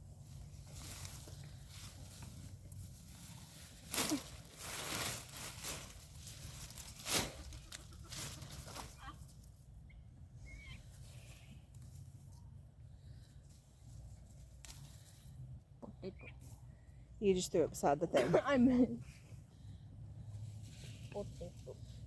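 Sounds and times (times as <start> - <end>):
shovel scraping soil: 3.8 - 9.1.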